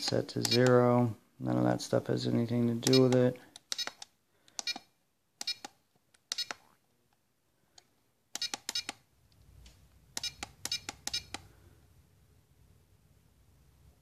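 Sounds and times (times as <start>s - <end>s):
transmitter keys beeping: 2.8s - 4.0s, 4.6s - 5.7s, 8.4s - 9.0s, 10.2s - 11.4s.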